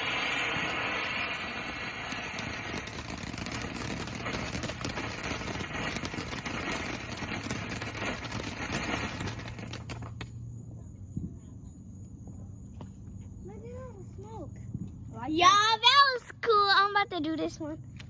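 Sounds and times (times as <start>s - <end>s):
firework hissing crackle: 0.0s - 10.3s.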